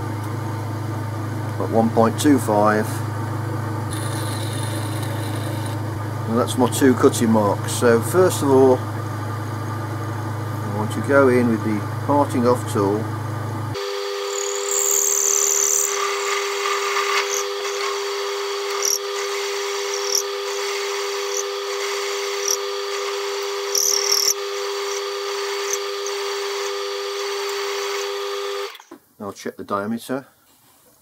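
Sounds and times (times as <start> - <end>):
high-pitched screeches: 3.9 - 5.8, 13.8 - 27.3
metal lathe whining: 3.9 - 5.9, 13.8 - 28.9.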